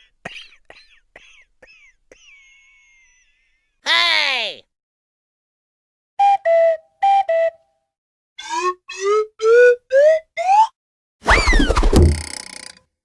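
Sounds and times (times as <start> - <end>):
cartoon whistle toots: 8.4 - 11.9
loud hit with falling whistle: 11.2 - 12.2.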